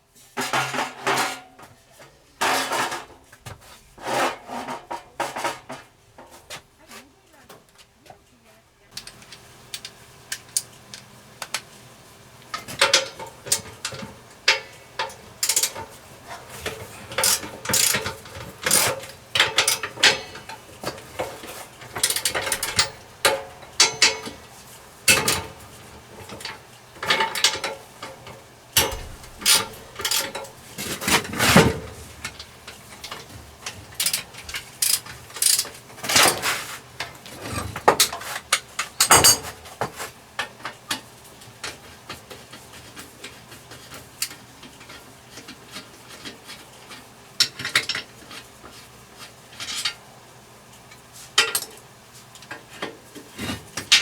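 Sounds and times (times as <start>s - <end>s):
ratchet clicks: 9.0s - 11.7s, 12.8s - 15.8s, 16.7s - 20.5s, 28.8s - 30.4s, 33.0s - 35.8s
sharp metallic knocks: 28.8s - 30.5s.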